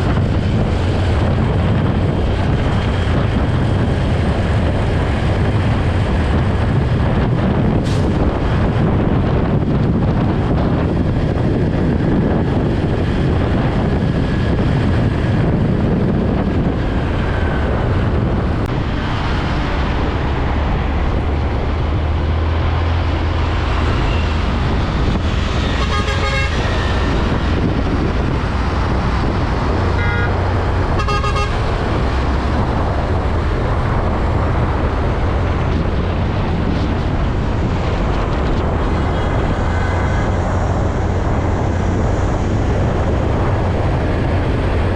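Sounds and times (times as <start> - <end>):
truck engines rumbling: 0.0 - 44.9
car horn honking: 25.8 - 26.8, 30.0 - 30.4, 31.0 - 31.6.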